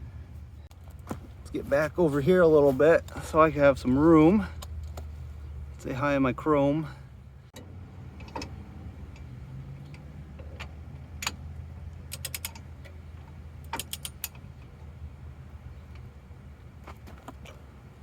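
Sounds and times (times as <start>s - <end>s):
low hum: 0.0s - 2.0s.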